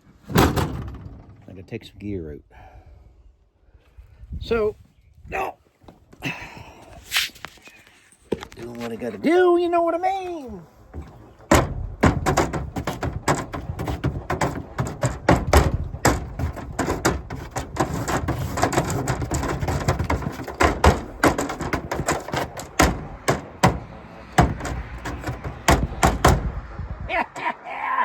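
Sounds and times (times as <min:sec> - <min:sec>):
gear knocking and clunking: 0:10.8 - 0:27.0.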